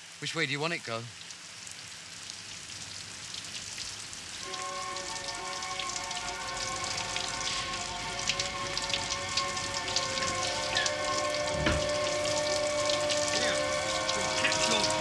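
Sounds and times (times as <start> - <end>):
rain falling: 0.0 - 15.0
sustained chord music: 4.4 - 15.0.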